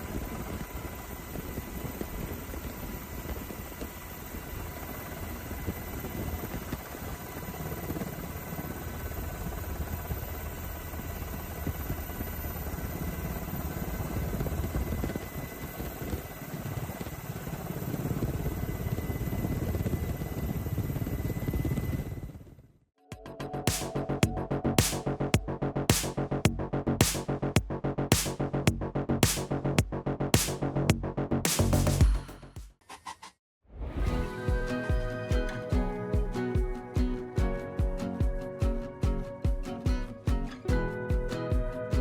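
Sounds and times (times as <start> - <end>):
helicopter rotor and engine: 0.0 - 22.7.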